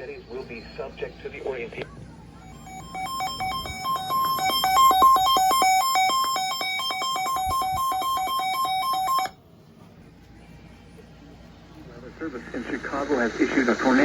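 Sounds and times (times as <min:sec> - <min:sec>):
electronic two-note warble alert: 0:02.4 - 0:09.3.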